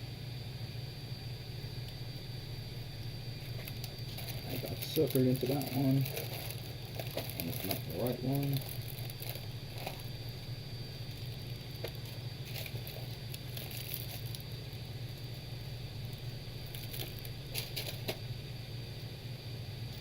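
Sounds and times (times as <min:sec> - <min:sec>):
steady low hum: 0:00.0 - 0:20.0
small parts and tools clicking: 0:03.5 - 0:10.1, 0:16.0 - 0:18.2.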